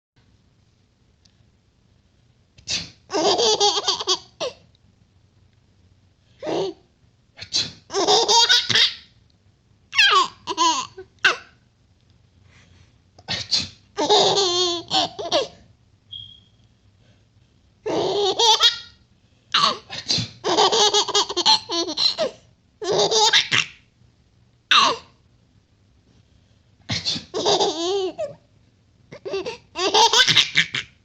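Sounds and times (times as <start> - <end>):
baby laughing: 3.1 - 4.6, 7.9 - 9.1, 9.9 - 11.5, 14.0 - 15.6, 17.9 - 19.0, 19.6 - 23.8, 24.7 - 25.1, 27.3 - 28.4, 29.1 - 31.0
man sneezing: 26.9 - 27.3.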